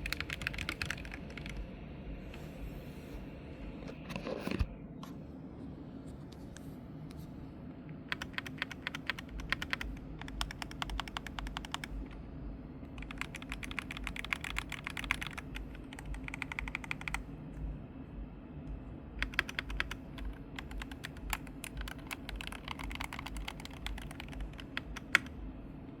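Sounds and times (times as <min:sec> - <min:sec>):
keyboard typing: 0:00.0 - 0:01.6, 0:08.1 - 0:12.2, 0:12.9 - 0:17.3, 0:19.2 - 0:25.4.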